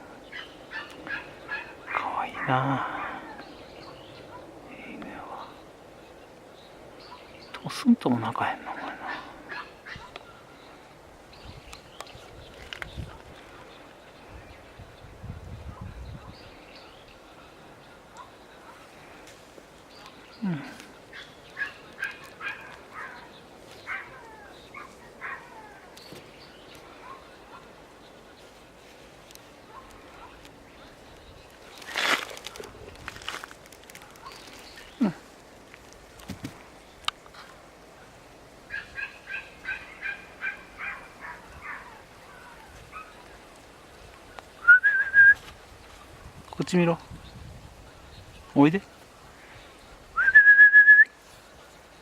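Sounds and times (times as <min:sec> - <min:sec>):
small dog yipping: 0:23.8 - 0:25.8, 0:38.7 - 0:43.1
loud whistled tone: 0:44.6 - 0:45.4, 0:50.2 - 0:51.1.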